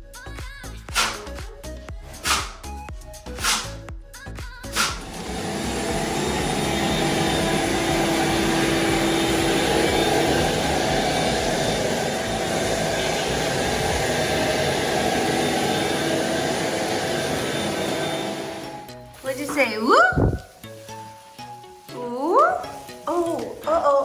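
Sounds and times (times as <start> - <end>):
machine motor whirring: 0.9 - 1.3, 3.4 - 3.8, 4.7 - 18.7.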